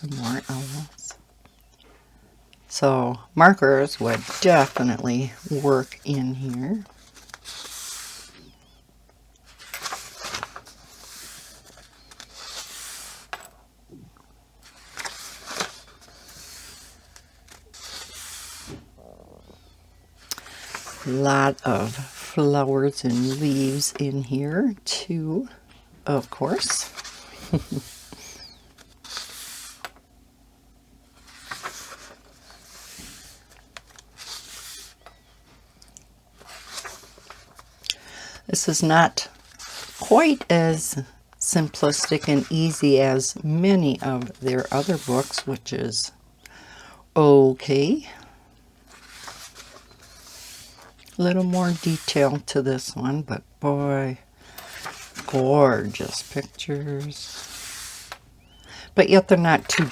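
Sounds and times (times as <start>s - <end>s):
book pages turning: 0.0s - 1.0s, 3.7s - 8.8s, 9.4s - 13.5s, 14.6s - 19.1s, 20.2s - 24.8s, 25.4s - 30.0s, 31.1s - 45.7s, 48.8s - 52.9s, 54.4s - 59.9s.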